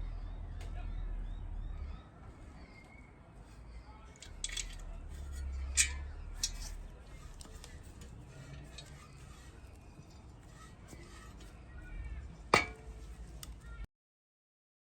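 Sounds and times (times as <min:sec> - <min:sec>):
sharp clink: 0:12.6 - 0:13.0.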